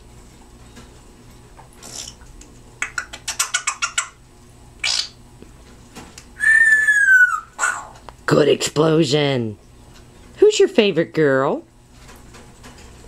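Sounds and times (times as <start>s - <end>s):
parrot hissing: 6.4s - 8.0s.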